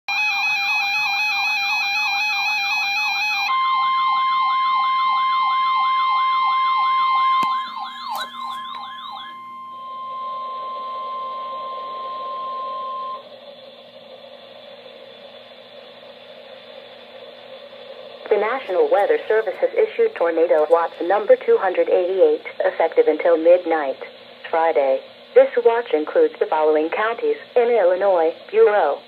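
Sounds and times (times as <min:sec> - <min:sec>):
electronic warble siren: 0:00.1 - 0:17.6
steady weather alert tone: 0:00.1 - 0:29.0
radio static hiss: 0:10.7 - 0:29.0.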